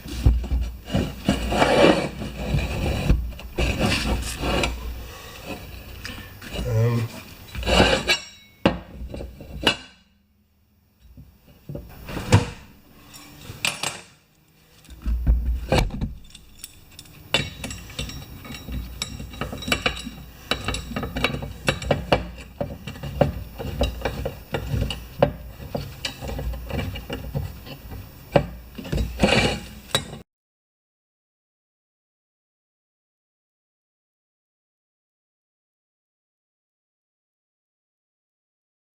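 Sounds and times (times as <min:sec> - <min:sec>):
tire tool clanking and scraping: 0:00.0 - 0:10.0, 0:11.6 - 0:30.2.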